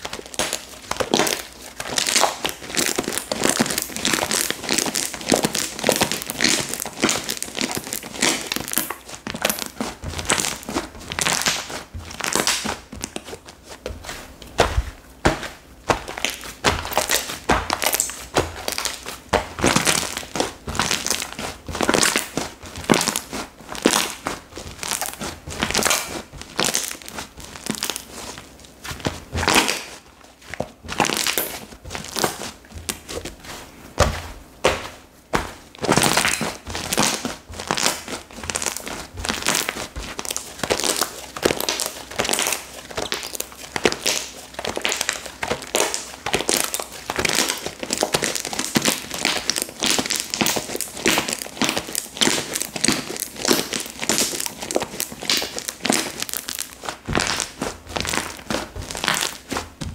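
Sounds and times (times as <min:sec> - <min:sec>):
slime squished by hand: 0:00.0 - 0:59.9.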